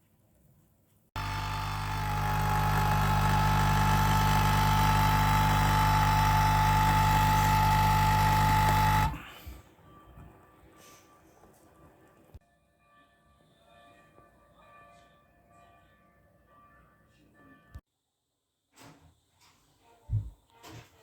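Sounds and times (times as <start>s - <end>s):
coffee machine pump buzzing: 1.2s - 9.2s.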